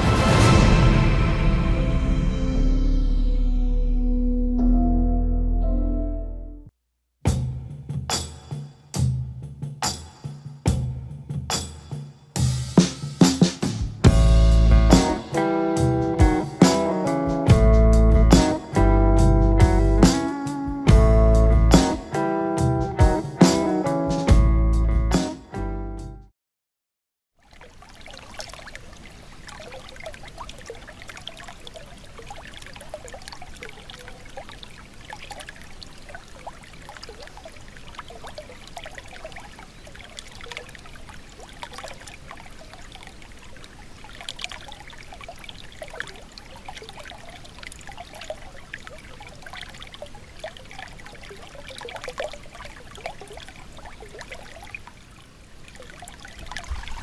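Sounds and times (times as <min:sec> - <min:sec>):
stream trickling and babbling: 0:14.0 - 0:20.9, 0:27.4 - 0:57.0.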